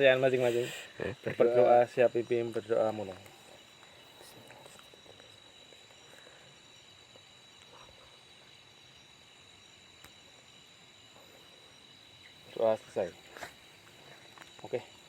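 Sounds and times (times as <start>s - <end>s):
night insects: 0.0s - 15.0s.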